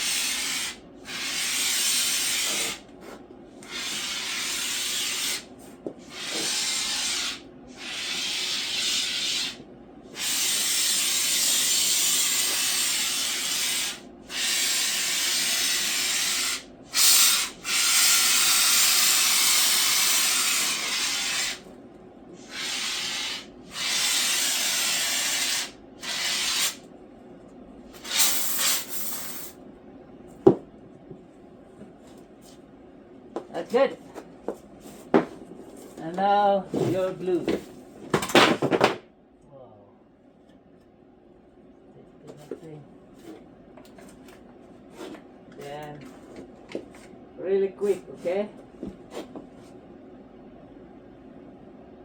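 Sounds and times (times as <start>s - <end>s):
spray foam can hissing: 0.0s - 2.8s, 3.7s - 5.5s, 6.1s - 9.6s, 10.2s - 21.6s, 22.4s - 26.8s, 28.0s - 29.6s.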